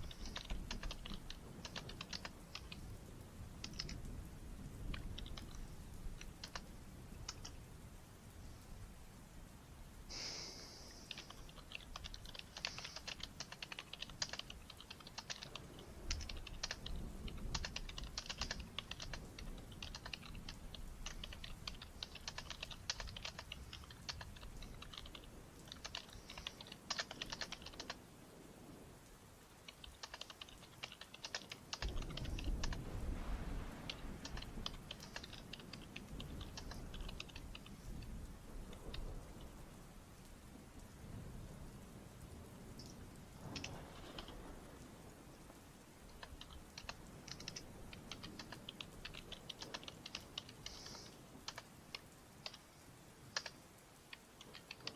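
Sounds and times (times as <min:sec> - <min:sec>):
typing on computer keyboard: 0:00.0 - 0:02.9, 0:03.6 - 0:04.1, 0:04.9 - 0:07.6, 0:10.8 - 0:28.0, 0:29.6 - 0:32.8, 0:33.8 - 0:39.6, 0:42.8 - 0:44.4, 0:46.1 - 0:52.7, 0:53.3 - 0:54.9.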